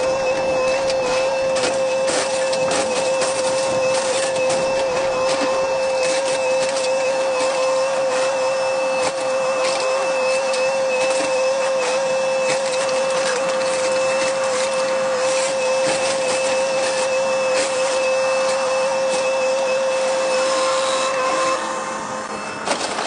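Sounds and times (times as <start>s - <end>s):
excavator hydraulic whine: 0.0s - 23.0s.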